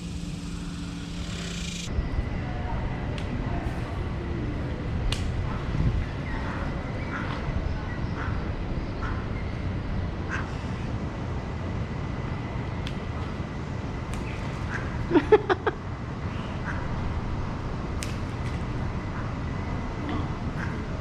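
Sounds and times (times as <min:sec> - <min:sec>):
ducks quacking: 0:06.4 - 0:07.5, 0:20.1 - 0:21.0.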